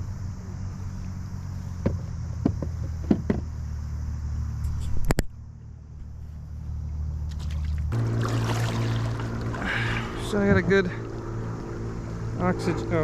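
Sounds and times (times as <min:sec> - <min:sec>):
low steady rumble: 0:00.0 - 0:13.0
gear knocking in a kayak: 0:01.8 - 0:03.5.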